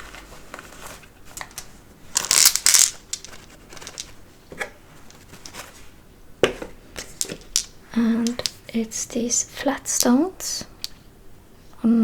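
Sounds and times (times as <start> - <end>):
stones clicking: 1.4 - 4.2, 7.0 - 8.6
bag rustling: 4.9 - 6.0.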